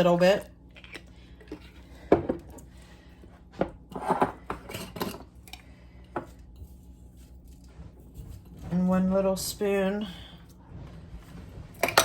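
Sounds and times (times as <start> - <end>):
utensils clinking against dishes: 3.9 - 5.6.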